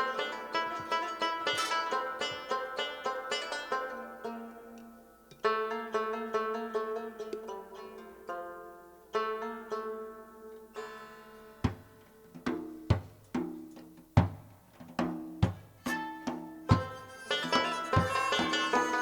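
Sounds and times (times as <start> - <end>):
plucked string instrument: 0.0 - 19.0
hand drum rhythm: 11.6 - 19.0.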